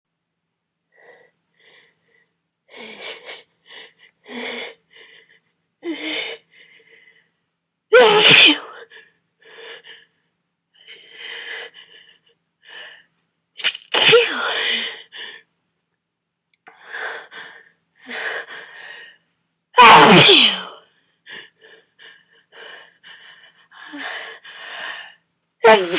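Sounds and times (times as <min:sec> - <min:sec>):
man sneezing: 0:08.0 - 0:08.6, 0:13.6 - 0:14.5, 0:19.8 - 0:20.7, 0:25.7 - 0:25.9
short breaths and voiced catches: 0:19.8 - 0:20.7, 0:25.6 - 0:25.9.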